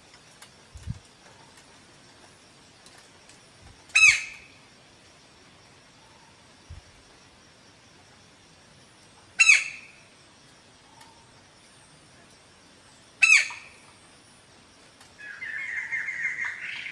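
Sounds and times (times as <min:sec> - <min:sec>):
woodpecker shrieking calls: 0:04.0 - 0:04.4, 0:09.4 - 0:09.9, 0:13.2 - 0:13.8, 0:15.2 - 0:16.9.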